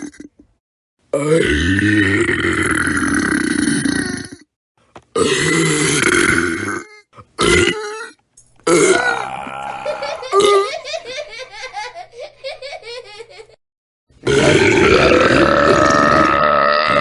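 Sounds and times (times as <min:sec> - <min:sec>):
person burping: 0:00.0 - 0:00.5, 0:01.1 - 0:04.5, 0:05.1 - 0:10.7, 0:14.2 - 0:17.0.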